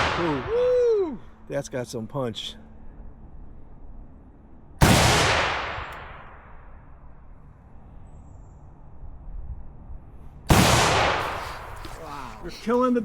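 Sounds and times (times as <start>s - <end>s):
rifle shots with echo: 4.8s - 6.6s, 10.5s - 11.7s.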